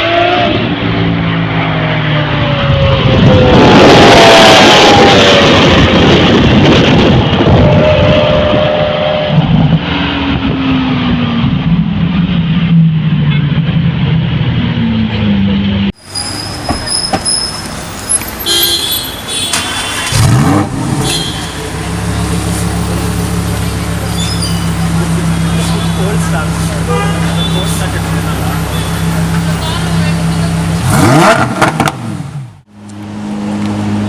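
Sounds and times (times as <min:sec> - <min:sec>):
car engines revving: 0:00.0 - 0:34.0
car horns tooting: 0:16.0 - 0:31.9
low engine drone: 0:20.2 - 0:34.0.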